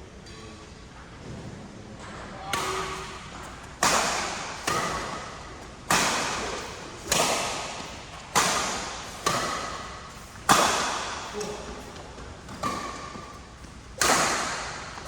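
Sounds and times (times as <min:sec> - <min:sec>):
rackets striking shuttlecock: 0:02.5 - 0:15.0.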